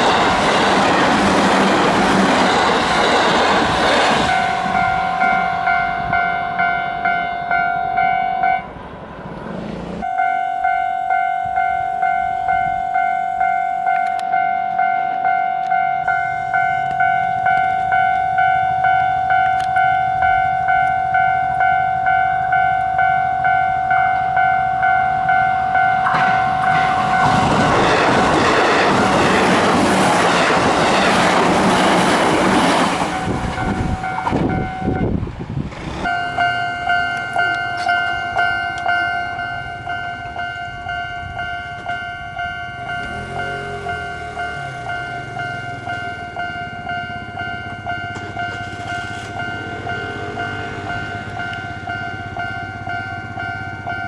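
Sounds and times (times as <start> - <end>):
train wheels clattering on rails: 0.0 - 6.2, 26.0 - 54.0
level crossing bell two-tone ringing: 4.3 - 8.7, 10.0 - 27.7, 36.1 - 54.0.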